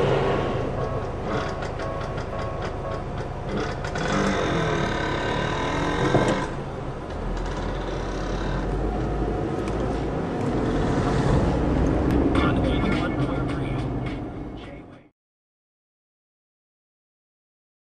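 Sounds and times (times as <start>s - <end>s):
deep engine rumble: 0.0s - 15.1s
crossing bell high tones: 0.6s - 3.2s.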